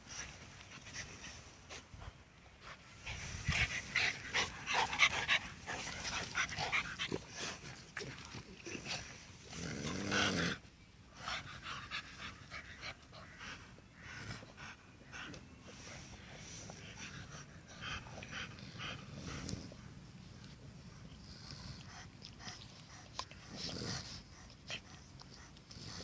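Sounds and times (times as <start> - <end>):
dog panting: 0.1 - 9.1, 20.9 - 26.0
dog growling: 4.4 - 10.6, 23.4 - 24.4.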